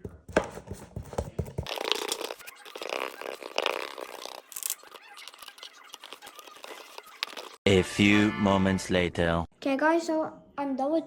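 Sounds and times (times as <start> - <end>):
wet squelching paint scraping: 0.4 - 7.6.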